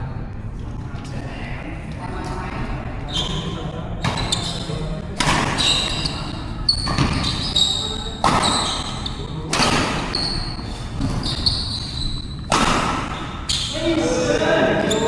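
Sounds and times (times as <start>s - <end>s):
shoes squeaking on court floor: 3.0s - 13.8s, 14.8s - 15.0s
racket striking shuttlecock: 9.5s - 10.2s, 12.5s - 13.4s.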